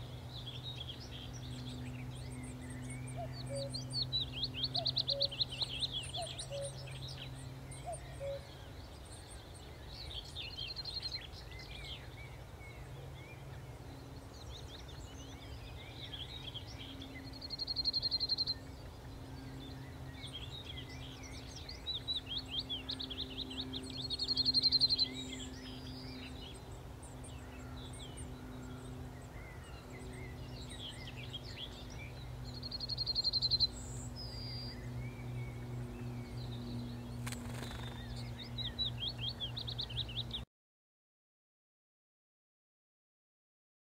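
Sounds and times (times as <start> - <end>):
low steady hum: 0.0 - 40.4
yellowhammer singing: 0.0 - 40.4
faint bird chirps: 37.2 - 38.8.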